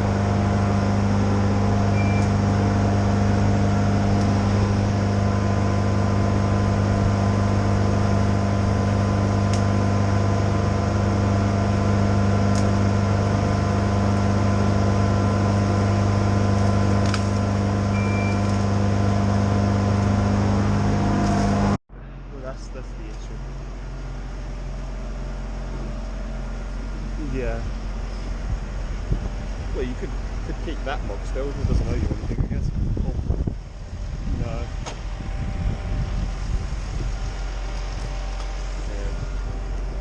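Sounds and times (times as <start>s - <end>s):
truck engine humming: 0.0s - 40.0s
short high beeps: 1.9s - 2.4s, 18.0s - 18.5s.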